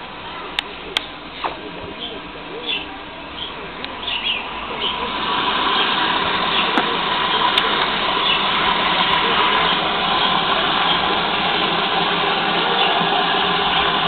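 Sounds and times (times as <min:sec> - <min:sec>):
faint bird chirps: 0:01.9 - 0:05.1
washing machine filling with water: 0:03.9 - 0:14.0.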